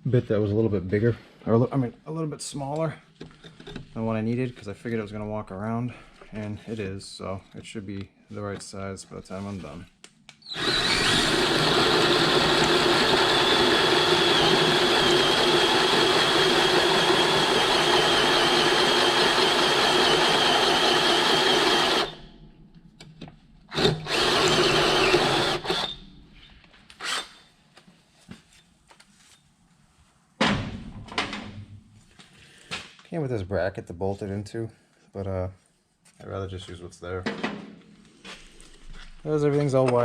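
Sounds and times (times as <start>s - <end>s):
power drill with hole saw whining: 10.4s - 22.4s, 23.7s - 26.1s, 26.9s - 27.6s.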